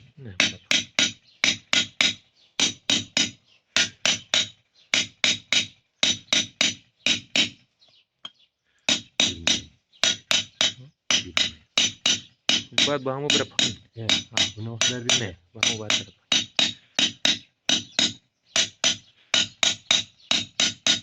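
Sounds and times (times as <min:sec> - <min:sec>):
sharp percussive hits: 0:08.9 - 0:21.0.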